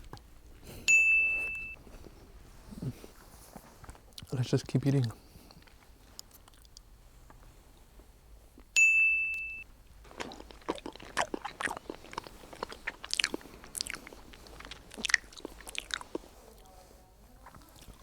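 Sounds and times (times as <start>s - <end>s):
close chewing with mouth clicks: 0.0s - 4.4s, 5.0s - 7.9s, 10.0s - 18.0s
bell-like ding: 0.9s - 1.8s, 8.8s - 9.6s.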